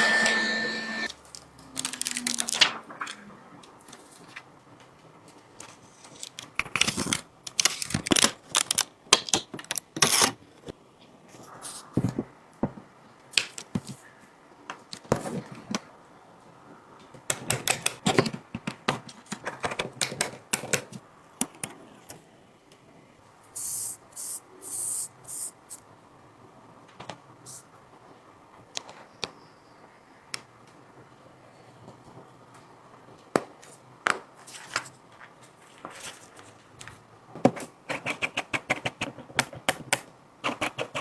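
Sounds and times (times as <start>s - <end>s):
high-pitched hissy scrapes: 0.0s - 1.1s
small tools clicking on phone: 17.3s - 18.0s.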